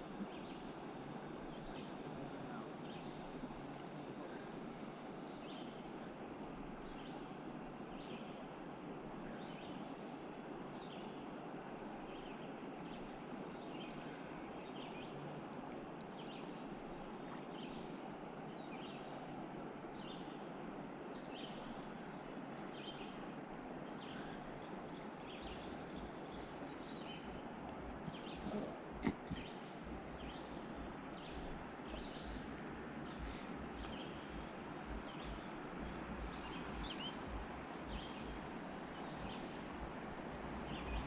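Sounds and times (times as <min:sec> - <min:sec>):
small birds chirping: 0:00.0 - 0:05.8, 0:22.6 - 0:41.0
river water flowing: 0:00.0 - 0:41.0.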